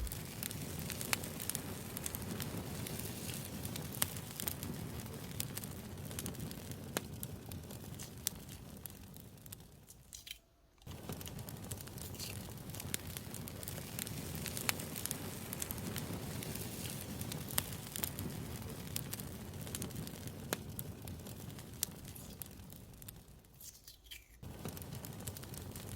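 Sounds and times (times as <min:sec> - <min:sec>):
campfire crackling and popping: 0:00.0 - 0:23.8, 0:24.4 - 0:25.9.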